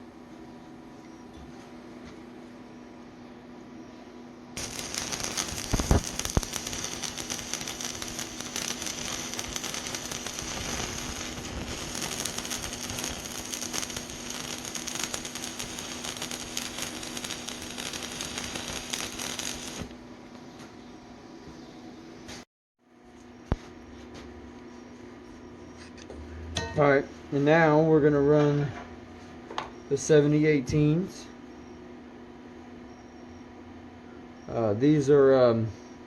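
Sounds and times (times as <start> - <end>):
sharp pops of arc striking: 4.6 - 19.9
welding arc crackling and sizzling: 4.6 - 20.0.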